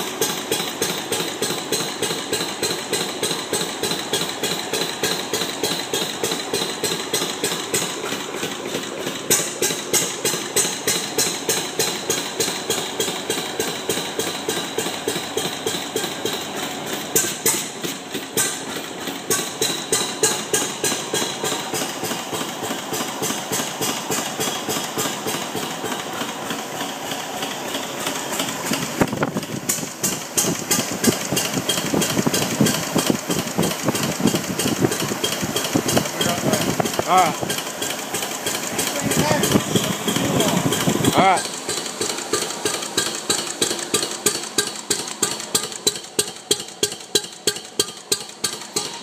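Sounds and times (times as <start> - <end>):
stationary engine idling: 0.0 - 49.0.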